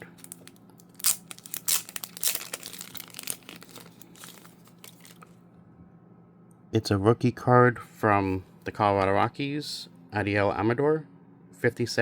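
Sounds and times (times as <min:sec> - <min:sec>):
packaging crinkling and tearing: 0:00.0 - 0:05.3.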